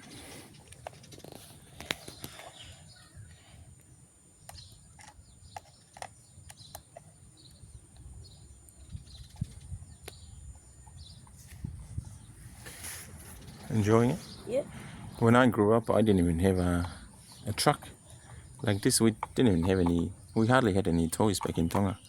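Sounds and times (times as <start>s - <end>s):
faint bird chirps: 0.0s - 11.4s.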